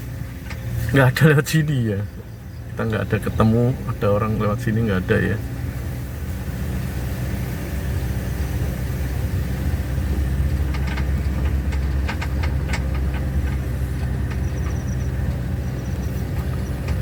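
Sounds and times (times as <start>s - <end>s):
engine and road drone: 0.0s - 17.0s
sharp knocks and rattles: 9.6s - 17.0s.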